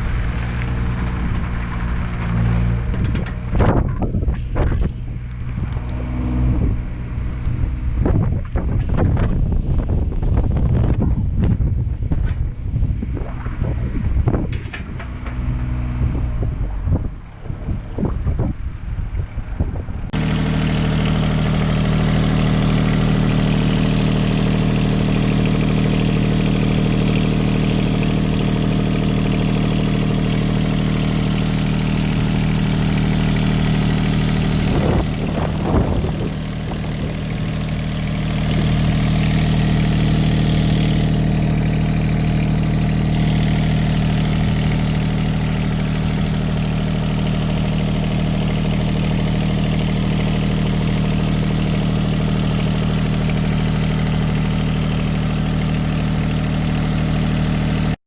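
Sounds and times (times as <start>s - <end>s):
wind buffeting microphone: 6.5s - 15.0s, 15.9s - 20.2s, 31.6s - 37.6s
excavator diesel engine idling: 20.1s - 58.0s.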